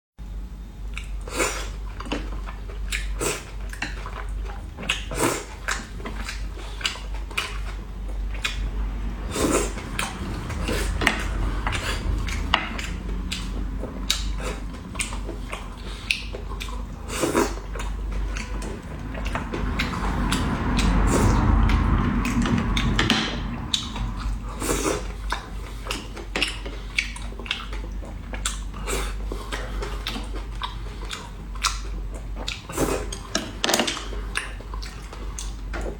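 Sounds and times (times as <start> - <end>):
chewing mouth noises: 0.9 - 35.9
low hum: 3.6 - 32.4.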